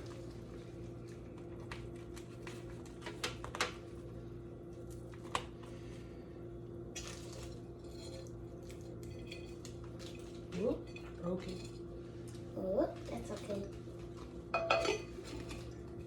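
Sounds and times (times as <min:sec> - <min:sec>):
low electrical hum: 0:00.0 - 0:16.0
dishes clinking: 0:14.5 - 0:15.7.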